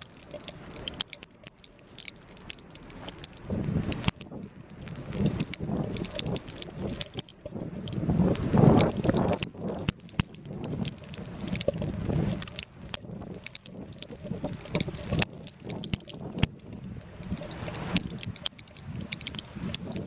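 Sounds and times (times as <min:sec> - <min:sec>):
wind buffeting microphone: 0:03.5 - 0:09.9, 0:10.5 - 0:20.0.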